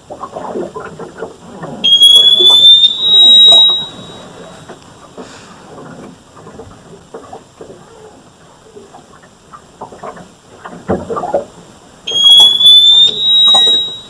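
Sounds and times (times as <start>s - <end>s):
loud piercing high tone: 1.8s - 4.5s, 12.1s - 14.0s.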